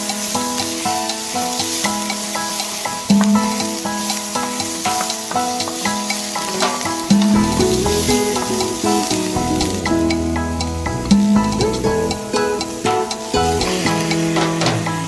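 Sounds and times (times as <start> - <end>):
food sizzling in a frying pan: 0.0 - 15.0
instrumental music of plucked notes: 0.0 - 15.0.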